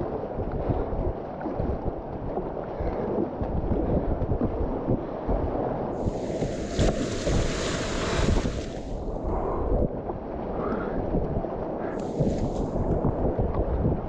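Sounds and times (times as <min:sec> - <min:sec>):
wind buffeting microphone: 0:00.0 - 0:14.0
whitewater rapids splashing: 0:06.0 - 0:09.0.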